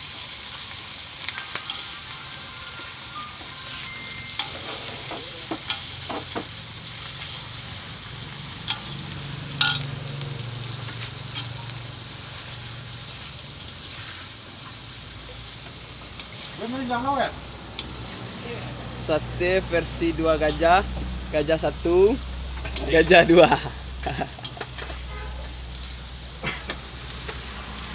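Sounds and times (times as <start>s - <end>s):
garlic sizzling in hot oil: 0.0s - 27.9s
utensil scraping a pan: 3.6s - 6.5s
sharp clinks on pan: 9.6s - 9.9s.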